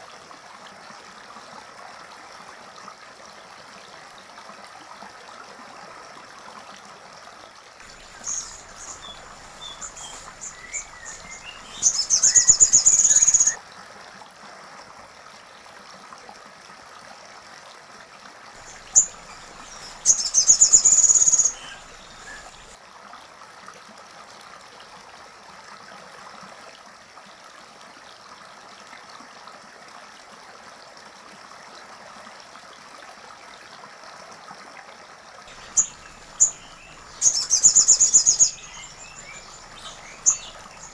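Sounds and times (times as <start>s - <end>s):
soft bird chirps: 7.8s - 13.6s, 18.6s - 22.8s, 35.5s - 40.9s
steady hiss: 7.8s - 13.6s, 18.6s - 22.8s, 35.5s - 40.9s
woodpecker trills: 7.9s - 13.6s, 18.6s - 22.7s, 35.5s - 40.9s.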